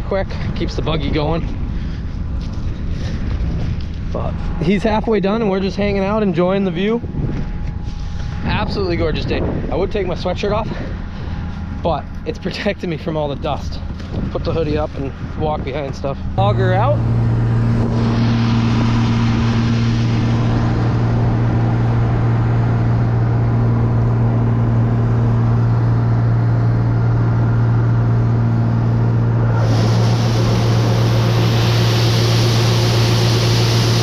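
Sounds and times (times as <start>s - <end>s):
combine engine humming: 3.8s - 34.0s
grain auger unloading: 16.4s - 34.0s
loud hiss: 29.5s - 34.0s.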